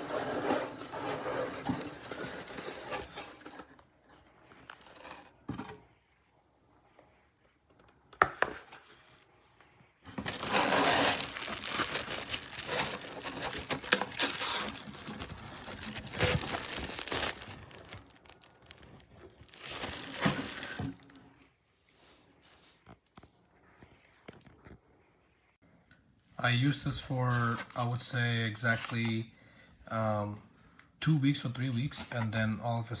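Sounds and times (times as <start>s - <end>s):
packaging crinkling: 10.2s - 21.3s.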